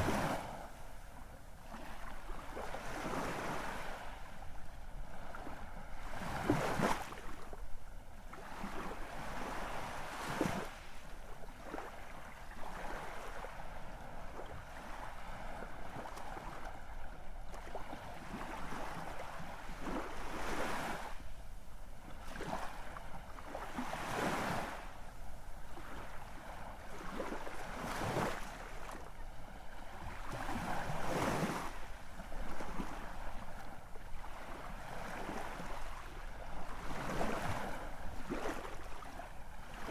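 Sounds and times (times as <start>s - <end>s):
sea waves breaking: 0.0s - 1.0s, 17.5s - 21.2s, 25.7s - 39.9s.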